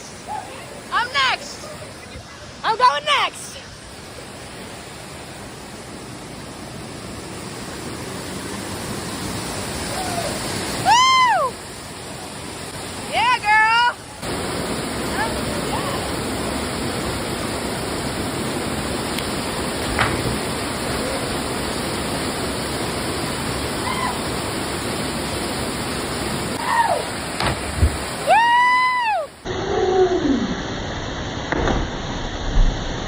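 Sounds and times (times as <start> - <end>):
waterfall pouring into a pool: 4.0 - 33.0
faint distant whoops: 9.9 - 11.6, 23.8 - 24.3, 26.6 - 27.1, 28.2 - 29.4
person shouting woo: 9.9 - 11.6, 23.8 - 24.2, 26.6 - 27.1, 28.2 - 29.3.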